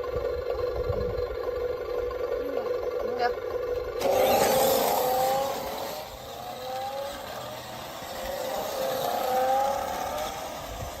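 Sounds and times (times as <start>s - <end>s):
electric motor whining: 3.8s - 11.0s.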